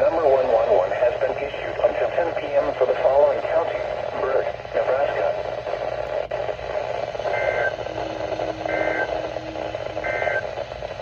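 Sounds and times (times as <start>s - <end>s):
radio hiss: 0.0s - 11.0s
two-tone digital squawks: 7.3s - 9.2s, 10.0s - 10.4s.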